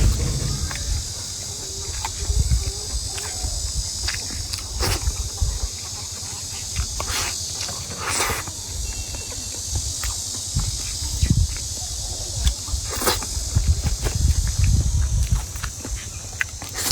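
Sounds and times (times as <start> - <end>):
chewing and wet mouth noises: 4.0 - 8.6, 9.7 - 16.9.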